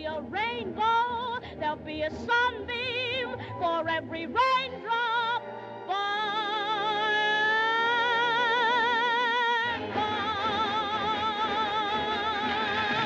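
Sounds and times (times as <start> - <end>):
woman singing with vibrato: 0.0 - 13.0
orchestra playing: 5.0 - 13.0.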